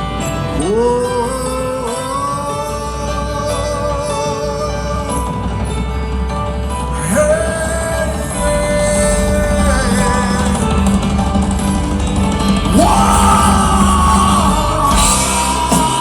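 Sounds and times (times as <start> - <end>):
rock band playing: 0.0 - 16.0
wordless vocal wail: 12.6 - 16.0.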